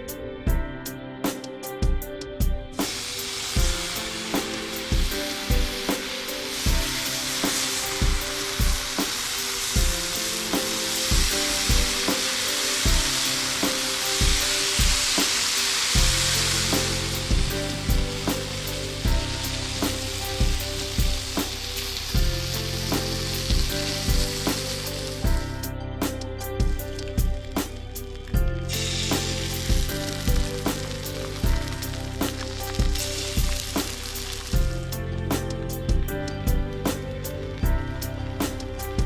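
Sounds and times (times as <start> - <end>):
background music with steady beat: 0.0 - 39.0
food sizzling in a pan: 2.8 - 25.6, 26.9 - 35.0.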